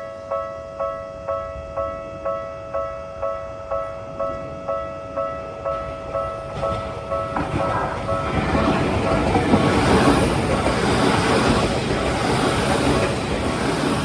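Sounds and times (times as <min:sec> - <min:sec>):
crossing warning bell ringing: 0:00.0 - 0:14.0
train wheels rushing on rails: 0:05.4 - 0:14.0.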